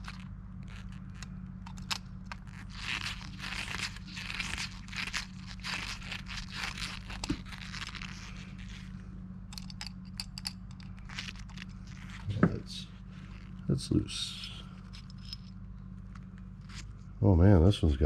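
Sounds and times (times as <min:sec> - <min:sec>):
steady low hum: 0:00.0 - 0:18.0
tool scraping metal parts: 0:09.5 - 0:12.5.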